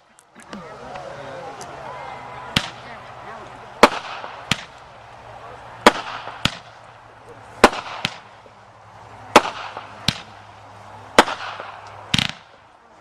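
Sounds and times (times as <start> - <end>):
firework bangs: 2.5 - 3.0, 3.8 - 5.1, 5.7 - 12.7
firework crackle: 3.5 - 12.8.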